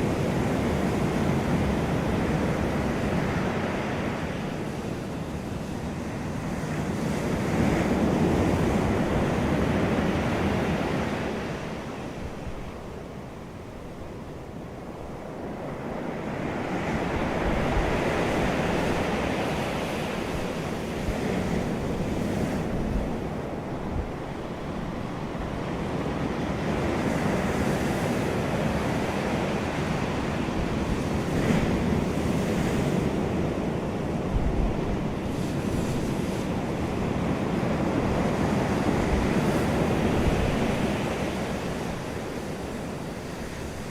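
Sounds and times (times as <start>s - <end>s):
ocean surf breaking: 15.2s - 43.9s.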